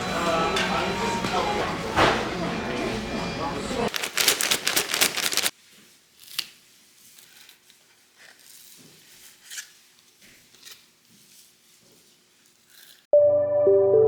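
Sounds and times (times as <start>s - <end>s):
handling clicks and rustles: 3.9s - 5.5s
loud rustle: 3.9s - 5.5s.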